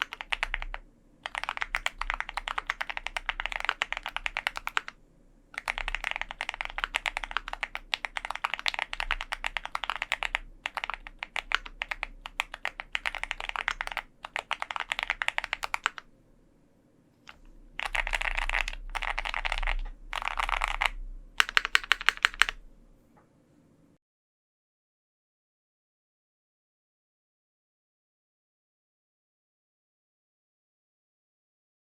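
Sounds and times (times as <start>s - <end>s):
mechanical keyboard typing: 0.0s - 5.0s, 5.6s - 16.1s, 17.3s - 22.6s.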